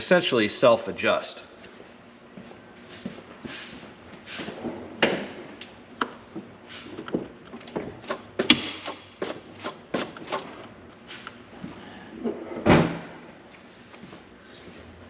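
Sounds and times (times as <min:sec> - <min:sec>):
sharp clicks and knocks: 0:06.9 - 0:11.0.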